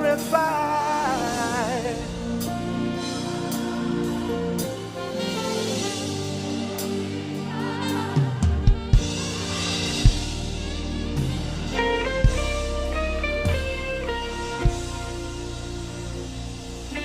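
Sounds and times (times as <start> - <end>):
bass: 0.0 - 17.0
held keyboard chords: 0.0 - 17.0
picked guitar notes: 9.8 - 17.0.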